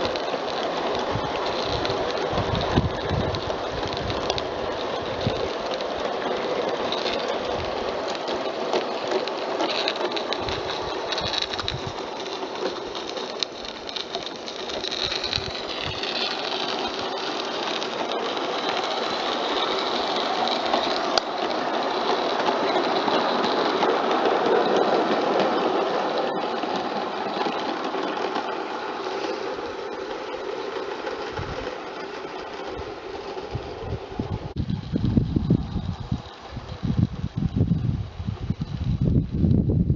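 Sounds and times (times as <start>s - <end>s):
steam locomotive hissing: 0.0s - 38.7s.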